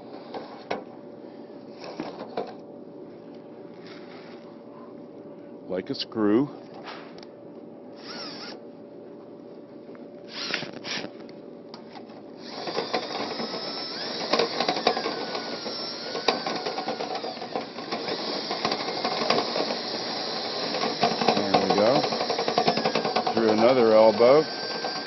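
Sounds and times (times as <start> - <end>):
drill spinning vent brush: 8.0 - 8.6, 10.3 - 11.1, 12.4 - 25.0
brush scraping and rattling in duct: 12.7 - 25.0.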